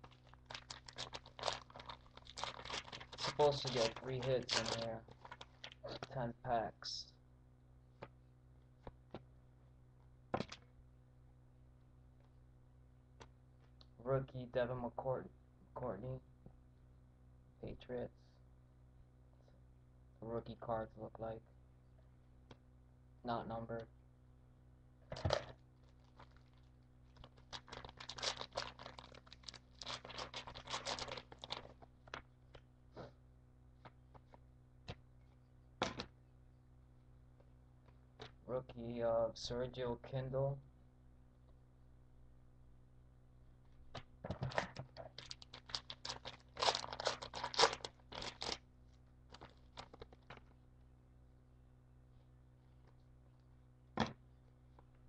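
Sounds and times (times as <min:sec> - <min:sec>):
wrapper tearing and crinkling: 0:00.0 - 0:06.0, 0:25.8 - 0:32.2, 0:45.1 - 0:48.6, 0:49.3 - 0:50.5
trading cards rustling and scraping: 0:00.0 - 0:06.1, 0:27.2 - 0:32.2.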